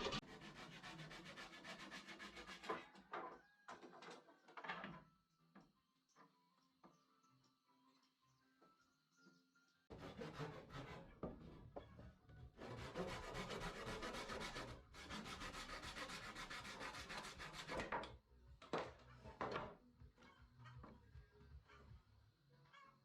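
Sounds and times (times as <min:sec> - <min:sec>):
wood sanded by hand: 0:00.0 - 0:02.7, 0:12.6 - 0:17.9.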